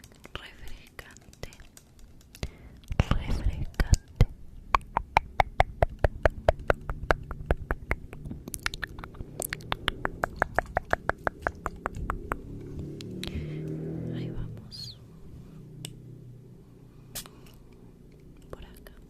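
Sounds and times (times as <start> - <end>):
rapid sharp clicks with hollow ring: 4.8 - 12.4.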